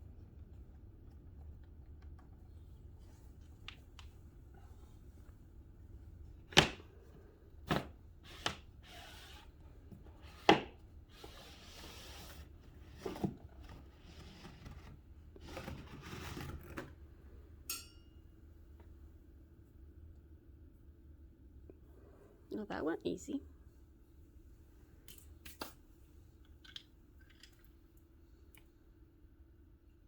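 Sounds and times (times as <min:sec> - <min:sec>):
rustling and scraping: 0:11.2 - 0:17.0.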